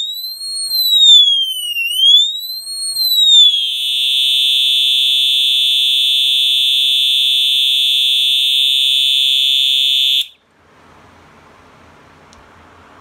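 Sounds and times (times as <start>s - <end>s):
fire alarm horn tone: 0.0s - 10.4s.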